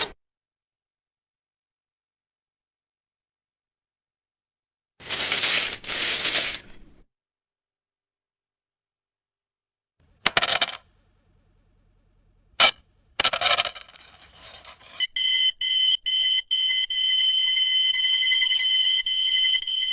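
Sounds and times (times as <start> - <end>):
coins clattering: 5.0 - 6.8, 10.3 - 10.8, 13.2 - 15.0
high electronic beep: 14.7 - 19.9.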